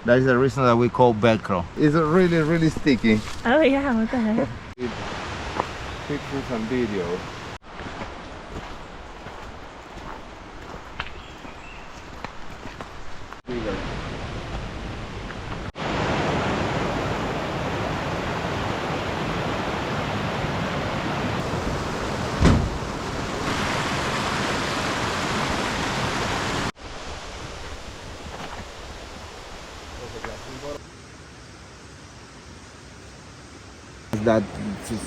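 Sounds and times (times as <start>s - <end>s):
fast-flowing water rushing: 21.4s - 26.7s
short thump: 21.6s - 23.2s.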